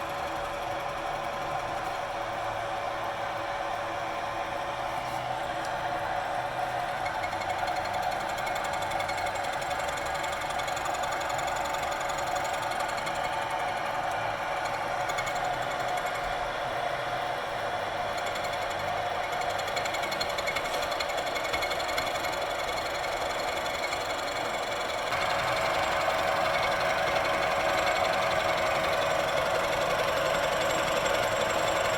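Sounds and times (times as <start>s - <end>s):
milling machine cutting metal: 18.2s - 31.9s.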